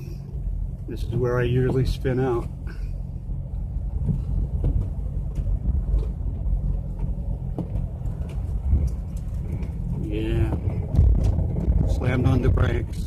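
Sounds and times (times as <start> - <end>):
engine and tyre rumble: 0.0 - 13.0.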